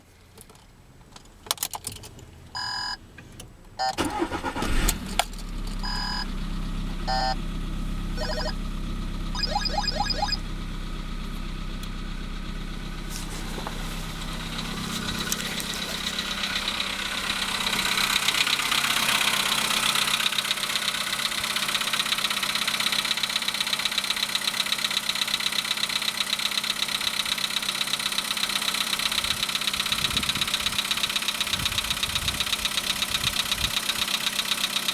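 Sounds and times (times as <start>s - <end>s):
car engine cranking and idling: 0.3s - 9.3s, 10.4s - 34.9s
short electronic beeps: 7.1s - 7.4s, 8.2s - 8.6s, 9.4s - 10.4s
clicks: 8.2s - 8.5s, 9.4s - 10.4s.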